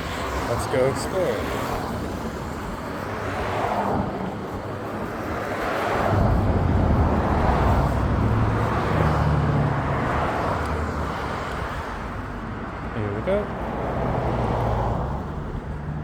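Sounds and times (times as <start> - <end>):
wind on microphone: 0.0 - 12.7
longboard wheels rolling on pavement: 0.0 - 16.0.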